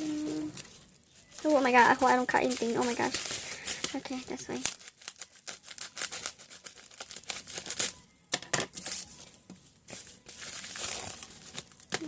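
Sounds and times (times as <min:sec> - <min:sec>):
paper crinkling and tearing: 0:00.0 - 0:08.0, 0:08.7 - 0:12.0.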